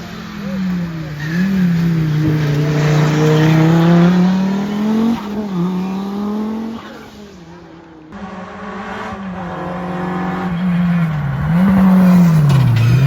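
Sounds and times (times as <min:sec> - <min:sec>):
rally car engine at full throttle: 0:00.0 - 0:13.0.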